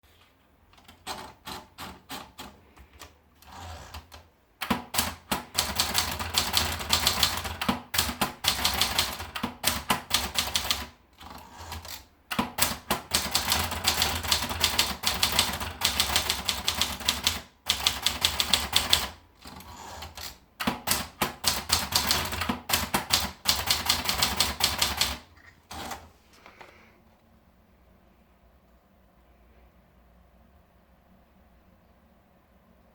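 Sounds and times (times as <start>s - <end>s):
typewriter keystrokes clattering: 0.7s - 26.1s.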